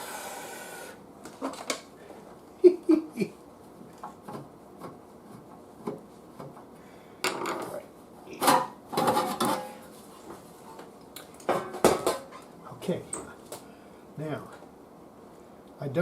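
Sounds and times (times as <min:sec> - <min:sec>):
objects clattering and rubbing: 0:07.3 - 0:10.9.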